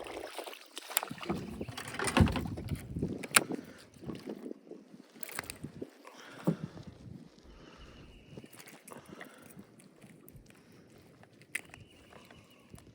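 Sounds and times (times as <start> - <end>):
water splashing: 0.0 - 2.8
knocks and clatter on kayak: 0.0 - 3.6.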